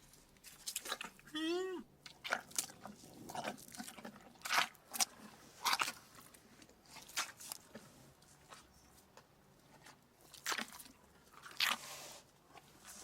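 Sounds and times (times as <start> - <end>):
crunchy chewing: 0.4 - 1.3, 2.0 - 8.7, 9.8 - 13.0.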